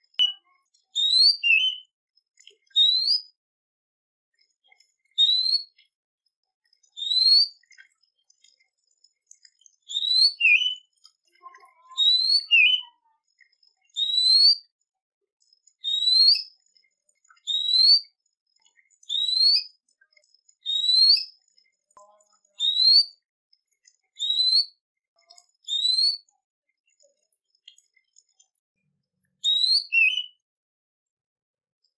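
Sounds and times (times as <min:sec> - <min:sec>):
songbird whistling: 0:00.2 - 0:01.9, 0:02.7 - 0:03.3, 0:05.2 - 0:05.8, 0:07.0 - 0:07.6, 0:09.9 - 0:10.9, 0:11.9 - 0:13.0, 0:14.0 - 0:14.7, 0:15.8 - 0:16.5, 0:17.4 - 0:18.0, 0:19.1 - 0:19.7, 0:20.6 - 0:21.3, 0:22.6 - 0:23.2, 0:24.2 - 0:24.8, 0:25.6 - 0:26.3, 0:29.4 - 0:30.4.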